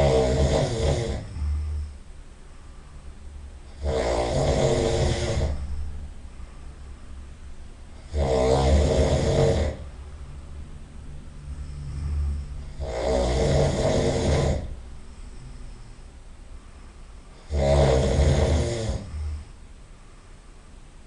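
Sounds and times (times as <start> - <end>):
person snoring loudly: 0.0 - 2.0, 3.7 - 5.8, 8.0 - 9.9, 11.6 - 14.8, 17.3 - 19.6
quiet breathing: 0.0 - 21.0.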